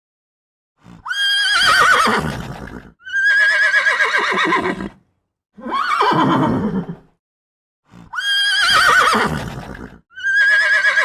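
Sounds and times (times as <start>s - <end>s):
horse whinnying: 1.0s - 5.0s, 5.6s - 7.1s, 8.1s - 11.0s.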